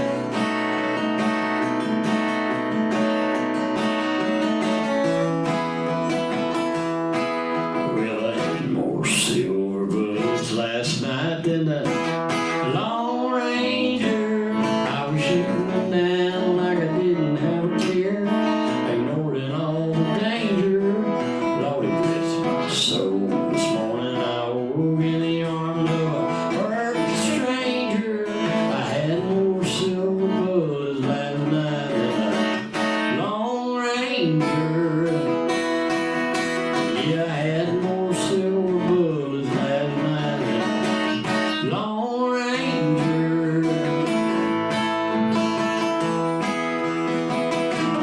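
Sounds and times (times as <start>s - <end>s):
acoustic guitar strumming: 0.0s - 48.0s.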